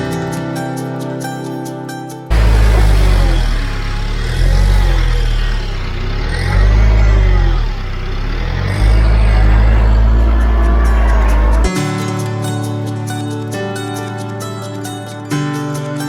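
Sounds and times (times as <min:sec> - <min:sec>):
tractor diesel engine under load: 0:02.3 - 0:11.7.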